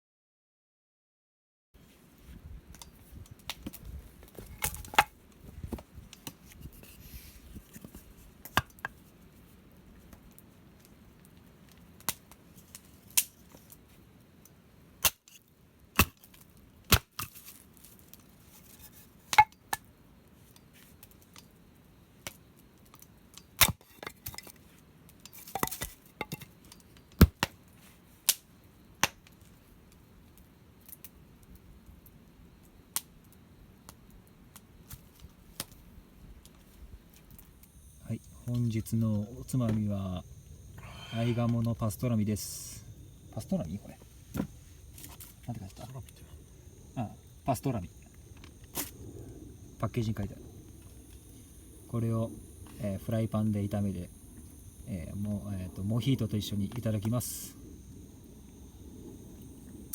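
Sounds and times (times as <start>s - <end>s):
clicks and knocks of objects handled: 2.7s - 9.1s, 22.3s - 27.6s.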